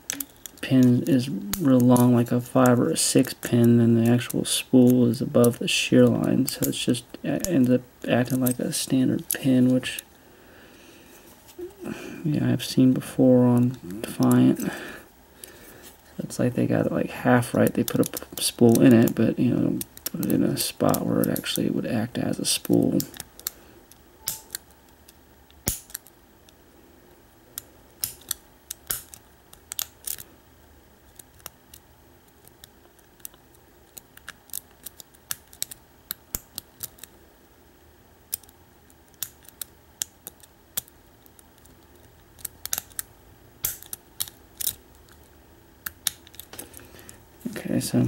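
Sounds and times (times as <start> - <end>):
lock pick clicking on pins: 24.2 - 24.6.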